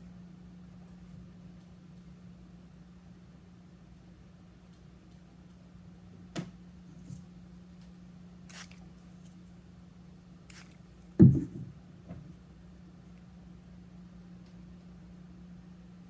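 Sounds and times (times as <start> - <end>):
steady low hum: 6.6 - 16.0
clay scraping: 10.5 - 11.8
dull thump on table: 11.2 - 12.2.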